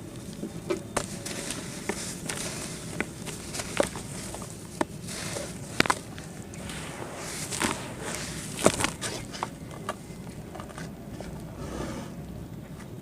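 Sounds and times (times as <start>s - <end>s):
dirt crumbling and crunching: 0.0s - 10.2s.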